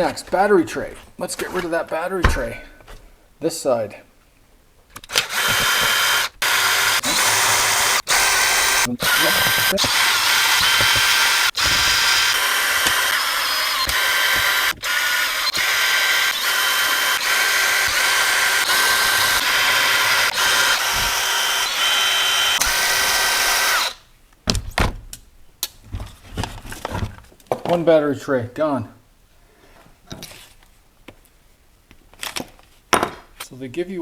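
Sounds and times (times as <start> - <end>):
power drill motor whine: 5.1 - 24.0.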